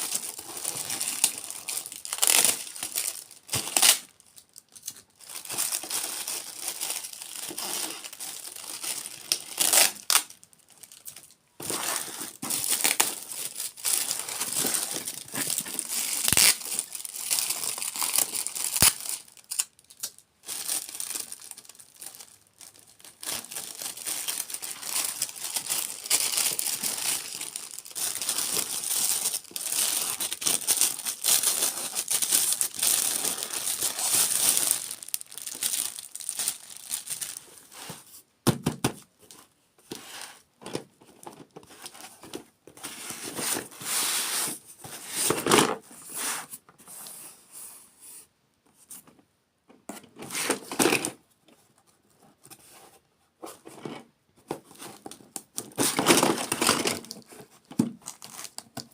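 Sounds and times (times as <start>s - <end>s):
close crinkling and crackling: 0.0s - 37.5s, 53.5s - 58.9s.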